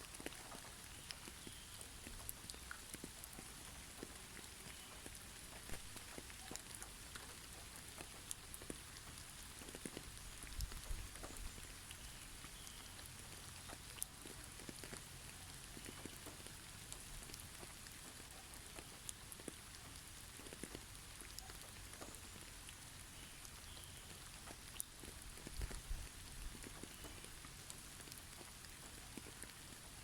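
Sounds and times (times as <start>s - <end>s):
soft steady hiss: 0.0s - 30.0s
water drops pattering: 26.4s - 30.0s.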